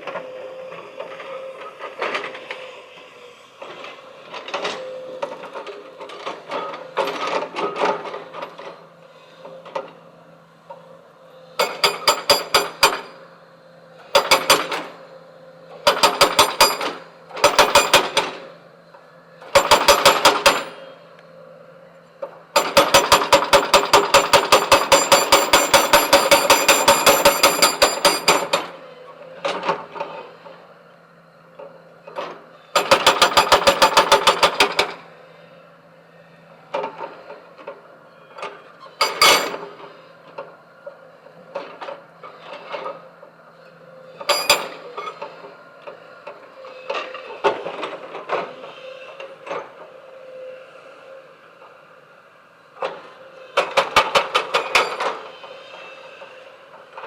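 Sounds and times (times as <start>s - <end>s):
hydraulic breaker hammering stone: 11.6s - 13.2s, 14.1s - 15.0s, 15.8s - 18.4s, 19.5s - 20.9s, 22.6s - 28.8s, 32.8s - 34.9s, 39.0s - 39.7s, 44.2s - 45.0s
knocks and clatter: 39.0s - 39.6s.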